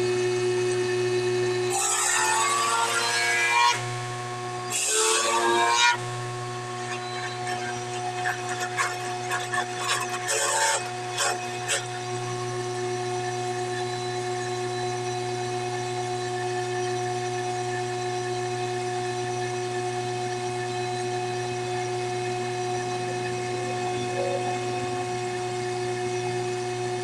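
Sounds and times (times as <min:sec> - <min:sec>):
power tool motor humming: 0:00.6 - 0:13.6.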